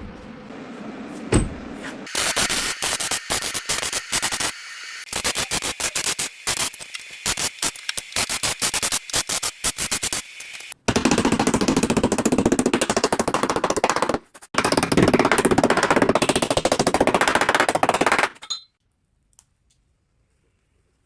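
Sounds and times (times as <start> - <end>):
pneumatic tool hammering: 2.1 - 18.5.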